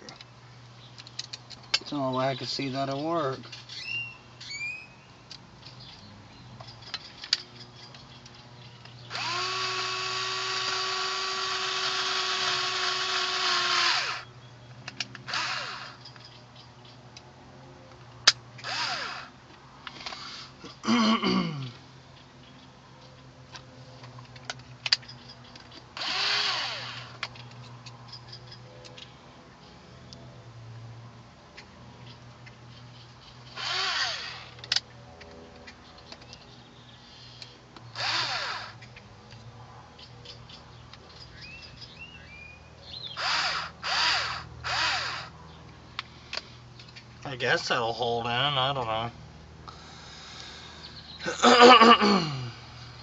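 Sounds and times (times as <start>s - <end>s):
power drill driving screws: 9.1s - 14.3s, 15.3s - 16.0s, 18.6s - 19.3s, 26.0s - 27.2s, 33.6s - 34.6s, 38.0s - 38.8s, 43.2s - 45.3s.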